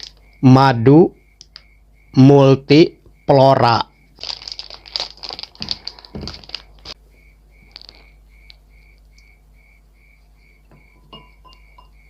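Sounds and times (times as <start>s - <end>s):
faint repeating chirp: 10.4s - 12.0s.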